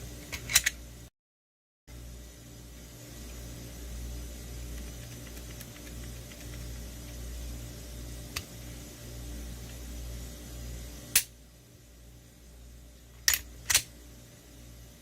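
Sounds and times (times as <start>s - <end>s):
low steady hum: 1.9s - 15.0s.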